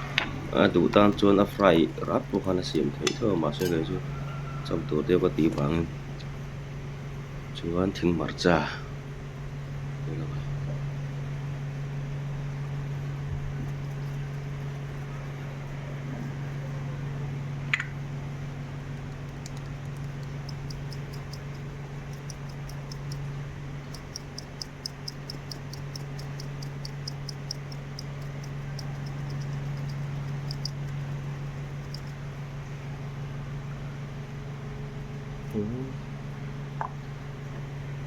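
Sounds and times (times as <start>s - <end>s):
low hum: 12.1s - 38.0s
chewing with mouth clicks: 13.6s - 16.4s, 19.0s - 23.2s, 23.8s - 32.2s
sharp click: 23.9s - 30.9s.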